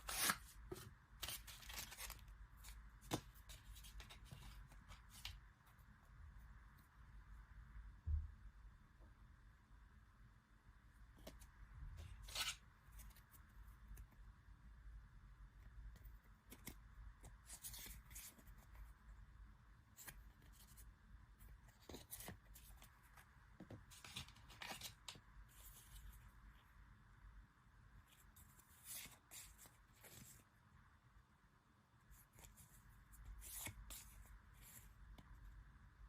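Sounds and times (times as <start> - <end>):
packaging and cards rustling: 0.0 - 5.2
low room hum: 0.0 - 36.0.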